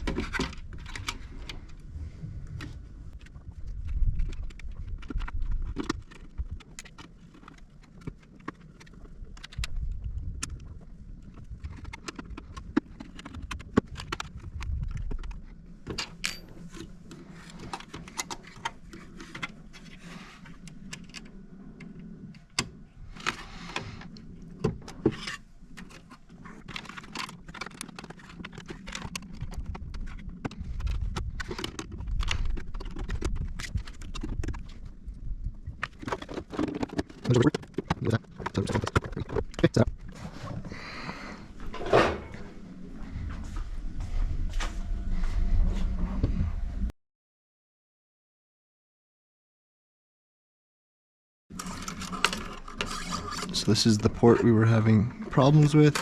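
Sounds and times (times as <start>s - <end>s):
small parts clicking and rattling: 25.0s - 34.8s, 51.5s - 56.0s.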